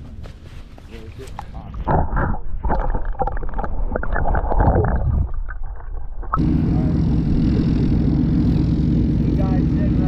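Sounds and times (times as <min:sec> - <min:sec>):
water splashing: 0:01.5 - 0:06.4
low rumbling: 0:01.5 - 0:10.0
airboat engine and propeller drone: 0:06.4 - 0:10.0.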